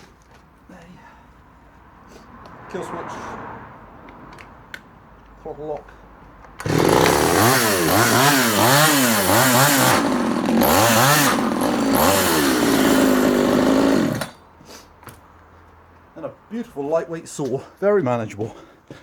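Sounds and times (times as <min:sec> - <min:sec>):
chainsaw engine revving: 0:06.6 - 0:14.4.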